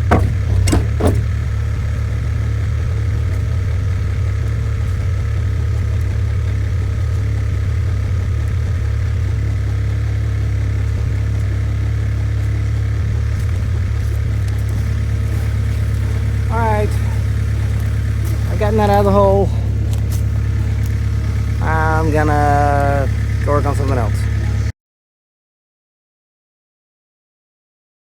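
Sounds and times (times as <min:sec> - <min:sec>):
sharp knocks: 0:00.0 - 0:01.6
skid steer engine running: 0:00.0 - 0:24.7.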